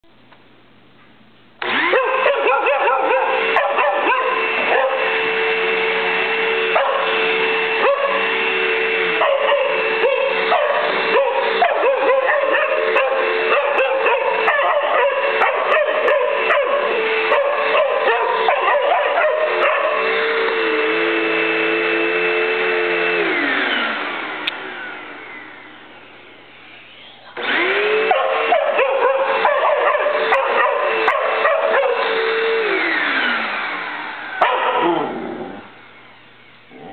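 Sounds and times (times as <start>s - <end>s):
vacuum cleaner whining: 1.6s - 36.9s
dog barking: 1.8s - 5.2s, 6.7s - 7.2s, 7.8s - 8.3s, 9.2s - 20.1s, 28.0s - 32.1s, 34.4s - 35.1s.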